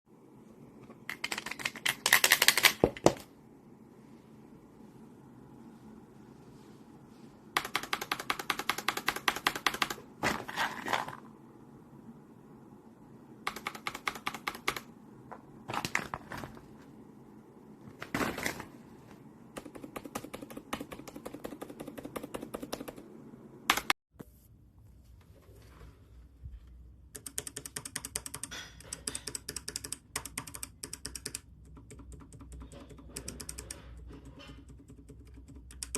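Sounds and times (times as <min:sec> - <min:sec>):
mechanical keyboard keys clicking: 0:01.0 - 0:03.2, 0:07.6 - 0:10.0, 0:13.5 - 0:14.9, 0:19.6 - 0:23.1, 0:27.1 - 0:35.9.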